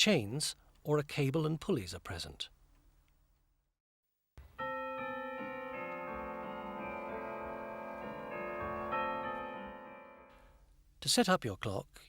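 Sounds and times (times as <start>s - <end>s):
slow gentle piano music: 4.4s - 10.6s.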